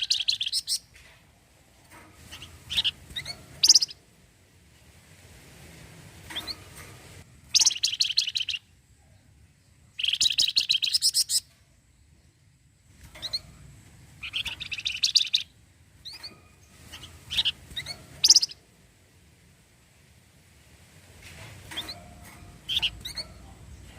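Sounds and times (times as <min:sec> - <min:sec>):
songbird rattling chatter: 0:21.7 - 0:23.8.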